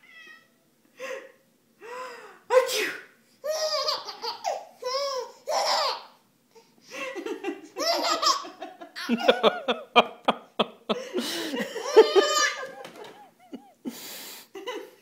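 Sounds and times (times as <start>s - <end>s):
baby laughing: 3.4s - 6.2s, 7.3s - 10.3s, 11.7s - 13.7s.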